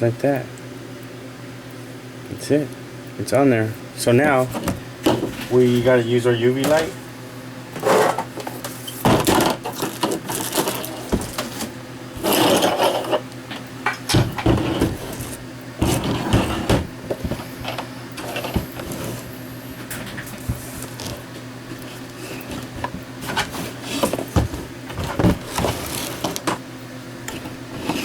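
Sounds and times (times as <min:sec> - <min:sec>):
steady low hum: 0:00.0 - 0:28.0
objects handled on work surface: 0:04.4 - 0:06.0, 0:06.6 - 0:07.0, 0:07.8 - 0:26.6, 0:27.2 - 0:28.0.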